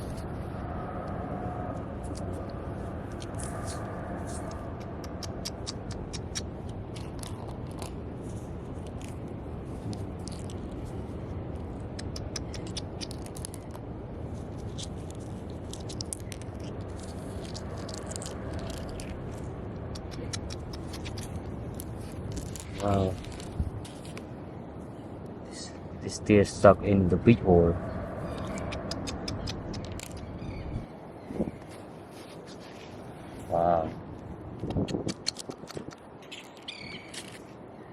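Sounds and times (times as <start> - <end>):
low rumbling noise: 0.0 - 34.8
digging through sand and stones: 2.0 - 24.9, 31.4 - 34.0, 34.6 - 37.6.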